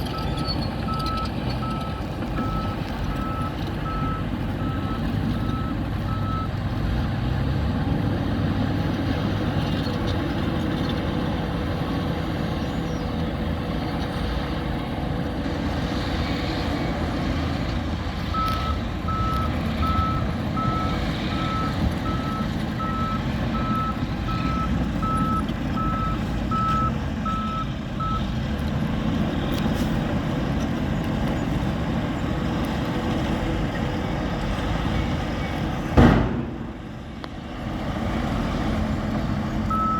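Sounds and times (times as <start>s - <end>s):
reversing alarm beeping: 0.0s - 6.5s, 18.3s - 28.2s, 39.7s - 39.9s
diesel engine rumble: 0.0s - 39.9s.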